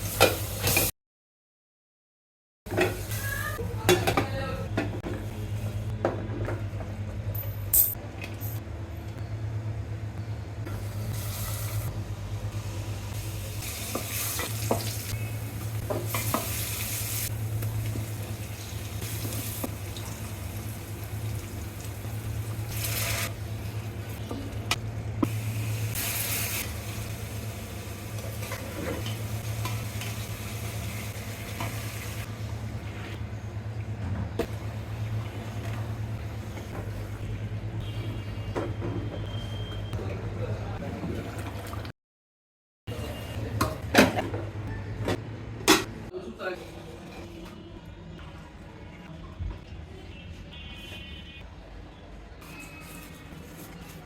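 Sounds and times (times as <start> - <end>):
food sizzling in a pan: 13.2 - 23.5, 25.3 - 32.3.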